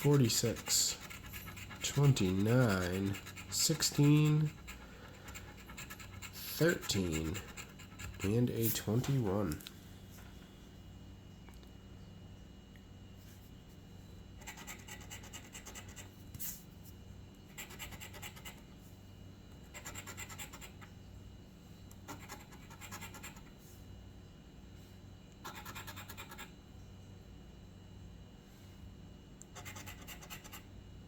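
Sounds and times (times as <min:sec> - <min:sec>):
scratching lottery ticket: 0:00.0 - 0:09.6, 0:14.4 - 0:16.1, 0:17.5 - 0:18.6, 0:19.6 - 0:20.9, 0:22.0 - 0:23.5, 0:25.4 - 0:26.5, 0:29.5 - 0:30.7.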